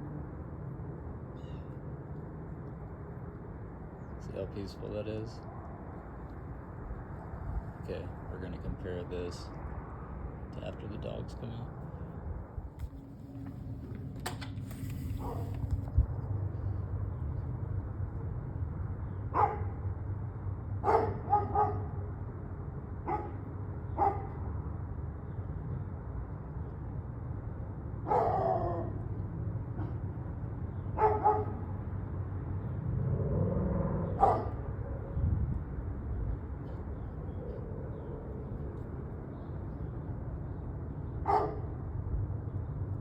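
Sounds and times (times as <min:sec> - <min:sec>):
dog barking: 0:19.3 - 0:19.8, 0:20.8 - 0:22.0, 0:23.0 - 0:24.4, 0:28.0 - 0:29.0, 0:31.0 - 0:31.7, 0:34.2 - 0:34.7, 0:41.2 - 0:41.8.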